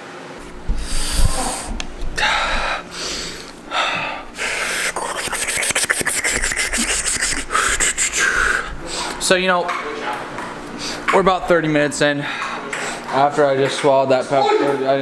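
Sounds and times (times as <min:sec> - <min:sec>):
person gasping: 0:00.4 - 0:09.3, 0:10.8 - 0:11.2
microphone handling crackle: 0:00.4 - 0:09.4.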